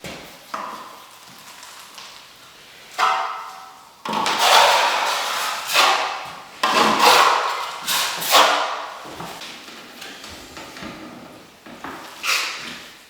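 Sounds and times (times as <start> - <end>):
tool rasping across hard surface: 4.2 - 9.4.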